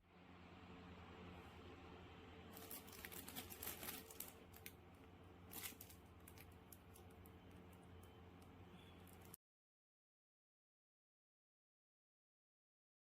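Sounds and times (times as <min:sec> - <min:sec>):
low electrical hum: 0:00.0 - 0:09.4
faint crinkling and rustling: 0:02.5 - 0:09.4.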